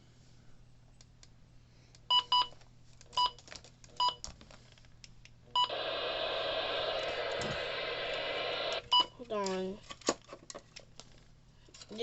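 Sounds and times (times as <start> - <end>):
radio static hiss: 5.6 - 8.9.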